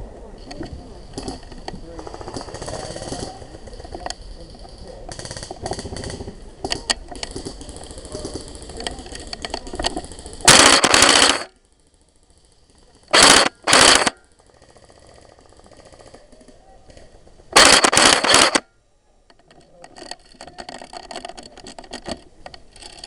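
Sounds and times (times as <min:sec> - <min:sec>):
scattered clicks: 0:00.4 - 0:11.7, 0:12.8 - 0:18.7, 0:19.3 - 0:23.0
airsoft gun firing bursts: 0:10.0 - 0:11.8, 0:13.1 - 0:16.0, 0:17.6 - 0:18.6.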